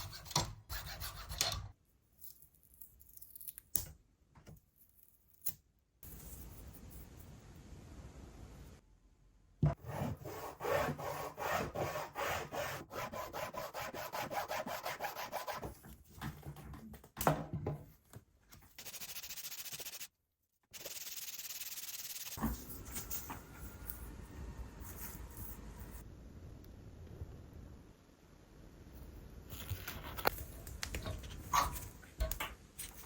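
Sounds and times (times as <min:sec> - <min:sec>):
file rasping strokes: 0:09.8 - 0:15.6.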